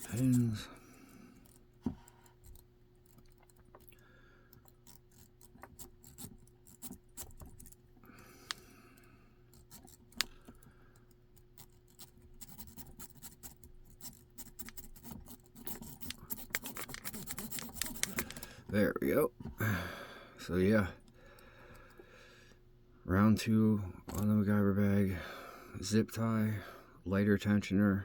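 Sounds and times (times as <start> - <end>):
rake scratching in lock keyway: 0.0 - 0.8, 4.6 - 7.8, 9.5 - 18.6.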